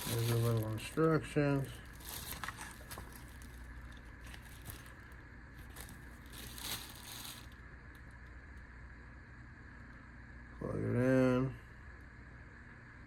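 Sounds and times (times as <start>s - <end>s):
packaging rustling and crinkling: 0.0s - 7.6s
steady low hum: 0.0s - 13.0s.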